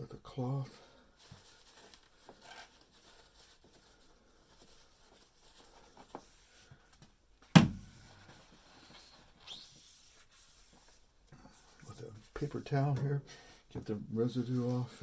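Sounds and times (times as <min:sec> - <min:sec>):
cloth rubbing a cord: 0:01.1 - 0:06.9, 0:07.9 - 0:13.0, 0:14.2 - 0:15.0
sharp knock: 0:07.6 - 0:08.0.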